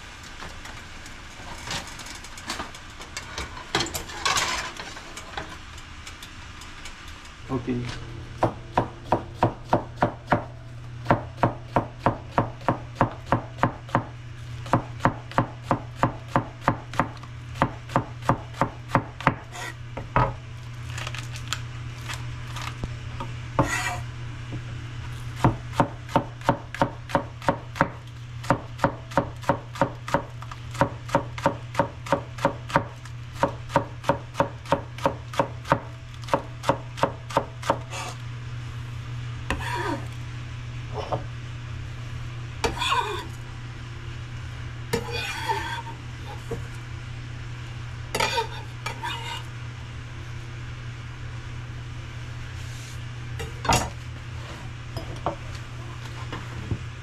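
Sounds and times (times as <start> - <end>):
steady low hum: 0.0 - 57.0
knife chopping on cutting board: 8.4 - 14.1, 14.7 - 19.7, 23.6 - 24.0.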